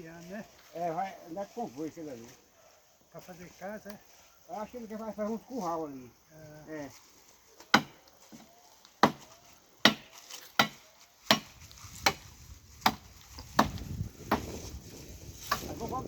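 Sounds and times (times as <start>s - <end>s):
blade chopping tree branches: 7.6s - 14.8s.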